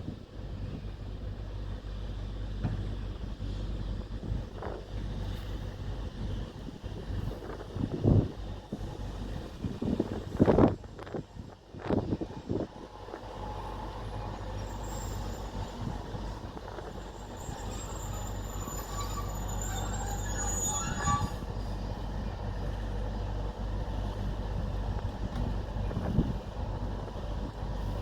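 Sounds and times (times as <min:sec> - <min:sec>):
diesel engine rumble: 0:00.0 - 0:28.0
wheels on rail: 0:01.6 - 0:28.0
high-pitched wheel squeal: 0:13.4 - 0:21.7.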